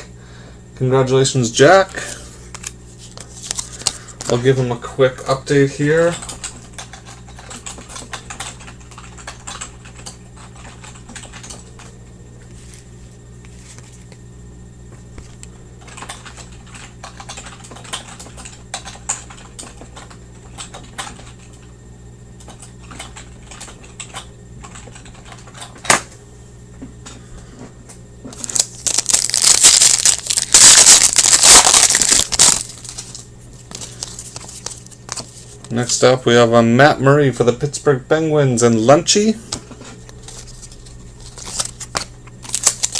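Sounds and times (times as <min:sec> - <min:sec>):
computer keyboard typing: 0:06.1 - 0:11.6, 0:15.8 - 0:21.4, 0:22.4 - 0:25.7
foil wrapper crinkling and tearing: 0:28.4 - 0:35.3, 0:40.2 - 0:42.9.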